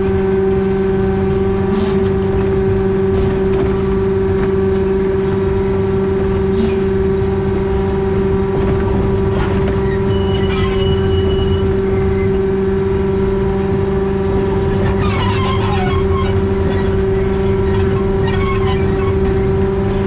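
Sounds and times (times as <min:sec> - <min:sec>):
diesel locomotive engine droning: 0:00.0 - 0:20.0
short high squeal: 0:09.4 - 0:13.0, 0:14.1 - 0:20.0.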